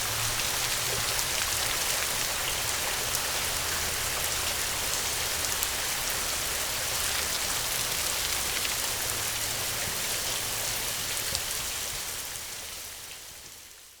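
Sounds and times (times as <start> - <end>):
steady rain falling: 0.0 - 14.0.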